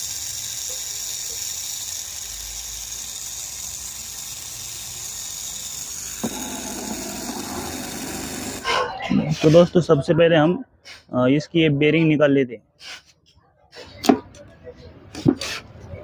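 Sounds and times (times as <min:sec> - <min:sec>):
electric pump motor whining: 0:05.6 - 0:08.7.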